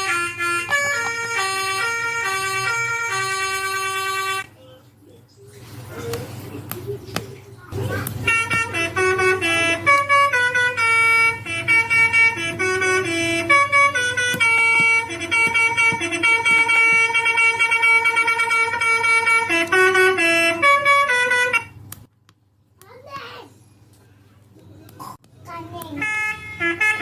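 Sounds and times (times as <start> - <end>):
electric bus horn melody: 0.0 - 4.5, 8.0 - 22.0, 25.8 - 27.0.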